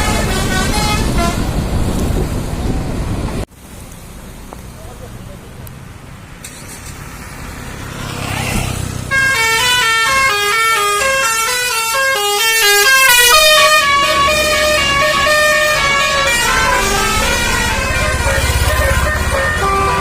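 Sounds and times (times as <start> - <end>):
multi-tone bus horn tune: 0.0 - 1.6, 9.1 - 20.0
low vehicle rumble: 13.0 - 20.0.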